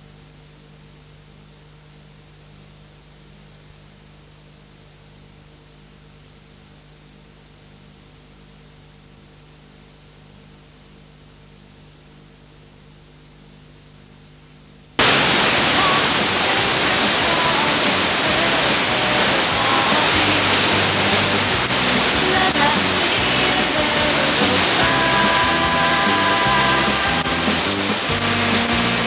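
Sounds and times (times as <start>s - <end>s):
loud static hiss: 0.0s - 12.4s, 14.8s - 29.0s
low steady hum: 13.6s - 29.0s
faint music: 15.0s - 29.0s.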